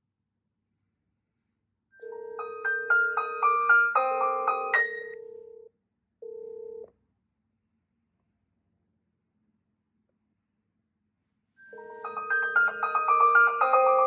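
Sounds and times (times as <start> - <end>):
bell-like chime melody: 11.7 - 14.0.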